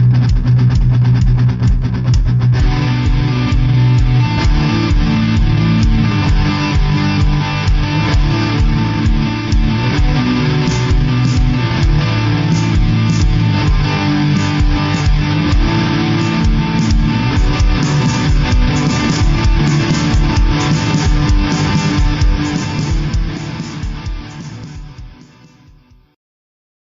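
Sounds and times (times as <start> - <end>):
guitar music with steady beat: 0.0 - 26.2.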